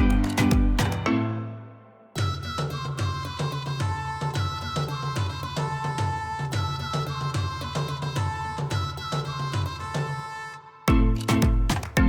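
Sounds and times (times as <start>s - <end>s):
steady drum beat: 0.0s - 1.1s, 10.9s - 12.0s
held melody line: 0.0s - 3.1s.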